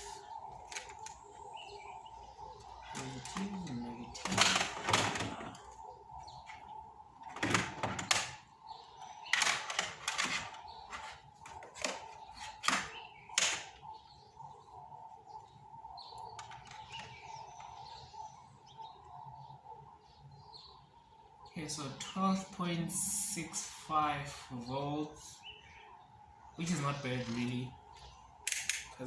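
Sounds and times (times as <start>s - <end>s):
multimeter probes clicking on battery: 28.4s - 29.0s.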